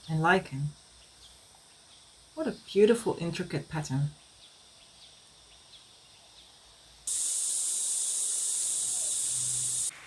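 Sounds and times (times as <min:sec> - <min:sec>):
faint outdoor ambience: 0:00.0 - 0:10.0
loud high-pitched hiss: 0:07.0 - 0:10.0.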